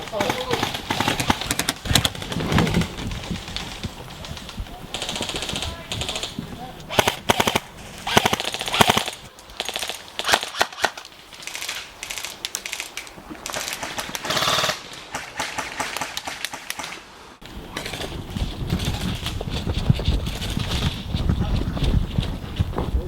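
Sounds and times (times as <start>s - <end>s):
airsoft guns firing: 0.0s - 3.0s, 4.9s - 17.0s.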